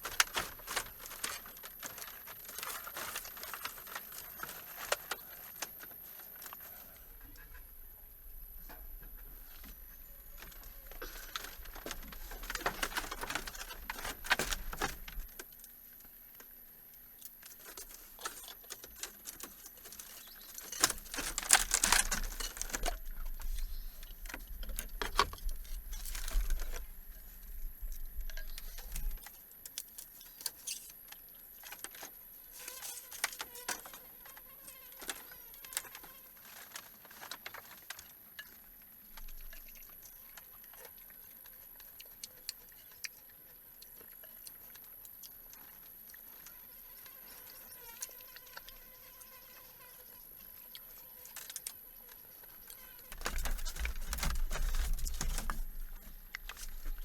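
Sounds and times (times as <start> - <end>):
hands handling things: 0.0 - 7.1, 52.8 - 57.0.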